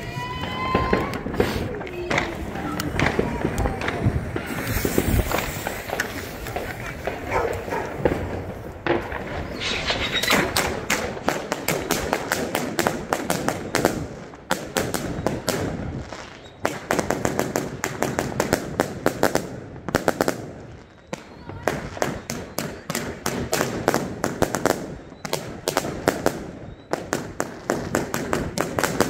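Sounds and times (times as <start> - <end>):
fireworks launch thumps and bursts: 0.4 - 16.0.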